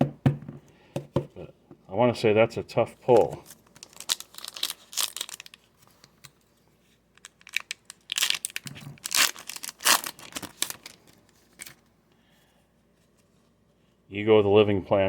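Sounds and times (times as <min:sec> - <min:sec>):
foil wrapper tearing and crinkling: 0:03.4 - 0:05.8, 0:07.2 - 0:11.8.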